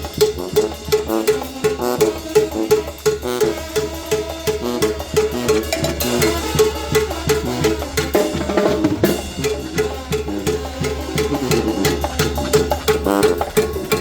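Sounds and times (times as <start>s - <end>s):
banda music drums: 0.0s - 14.0s.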